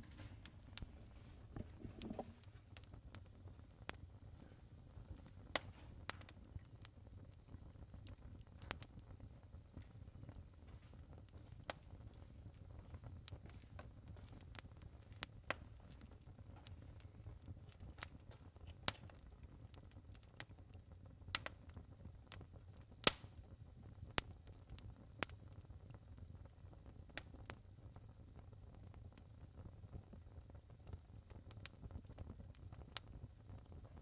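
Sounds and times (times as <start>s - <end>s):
wood fire crackling: 0.0s - 34.0s.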